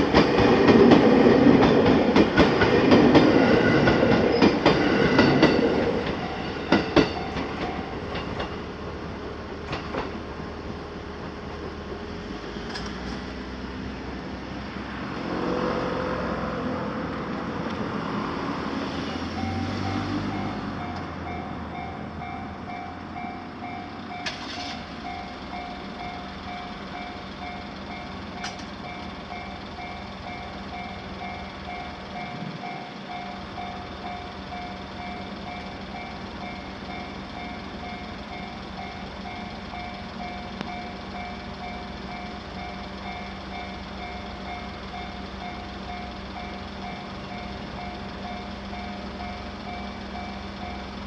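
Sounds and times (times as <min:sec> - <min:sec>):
level crossing warning bell: 0:03.1 - 0:08.4, 0:19.1 - 0:51.0.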